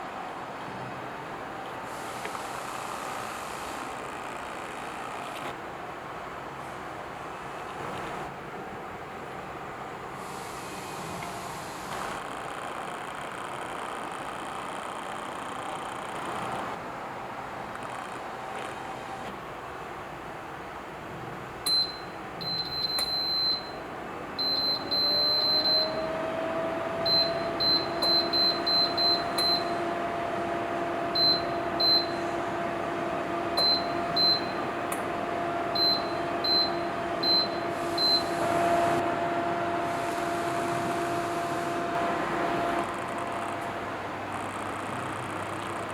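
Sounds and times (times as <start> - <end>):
heater fan motor humming: 17.2 - 45.9
short high beeps: 21.7 - 23.8, 24.4 - 26.0, 27.1 - 29.8, 33.6 - 34.6, 35.8 - 38.4.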